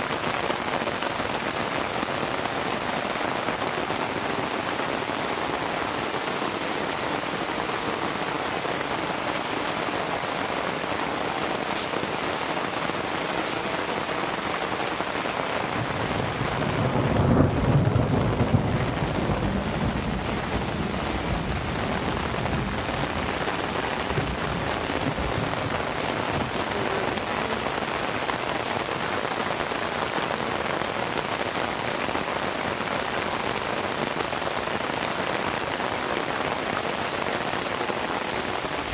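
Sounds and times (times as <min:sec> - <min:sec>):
heavy rain: 0:00.0 - 0:38.9
low roll of thunder: 0:15.7 - 0:28.4.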